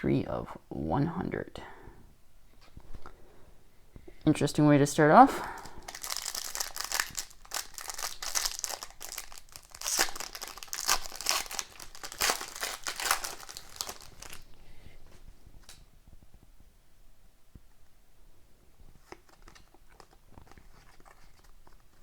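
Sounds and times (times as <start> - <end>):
foil wrapper tearing and crinkling: 5.6 - 14.5, 19.0 - 22.0.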